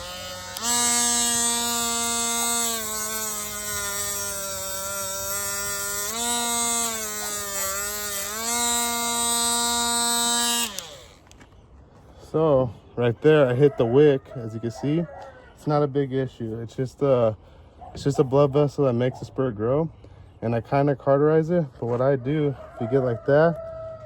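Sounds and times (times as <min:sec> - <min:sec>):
rotary tool whining: 0:00.0 - 0:11.6.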